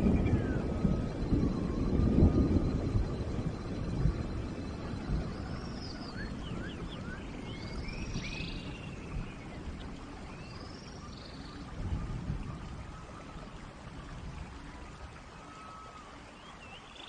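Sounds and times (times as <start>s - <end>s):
steady rain: 0.0s - 17.0s
rising bird chirps: 3.6s - 9.3s, 15.4s - 17.0s
bird whistled notes: 15.5s - 17.0s.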